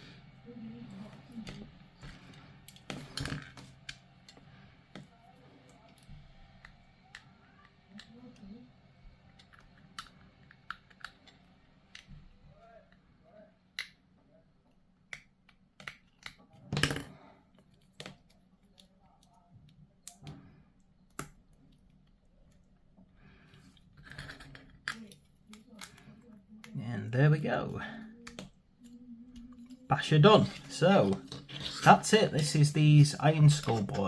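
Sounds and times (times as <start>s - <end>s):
plastic parts clicking together: 9.2s - 12.2s, 15.0s - 22.7s.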